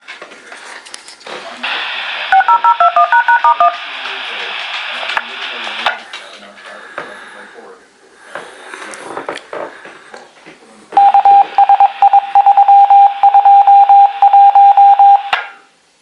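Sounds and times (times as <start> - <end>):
electronic beep keyed on and off: 2.4 - 3.8, 11.0 - 15.3.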